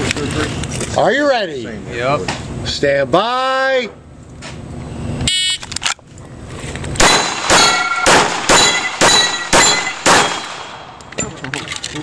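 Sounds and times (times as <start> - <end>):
shot timer beep: 5.3 - 5.6
steel targets ringing: 7.0 - 10.9
pistol shots: 7.0 - 11.0.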